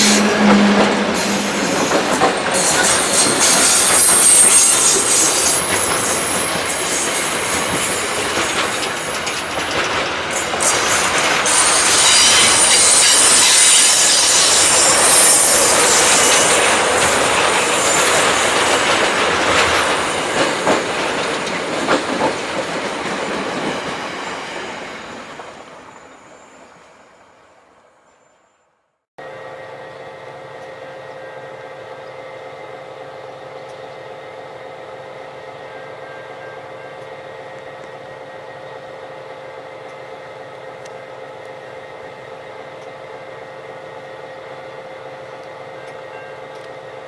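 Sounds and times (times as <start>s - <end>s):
high-pitched wheel squeal: 0.0s - 8.2s, 11.4s - 18.5s
train wheels rumbling over rails: 0.0s - 26.0s.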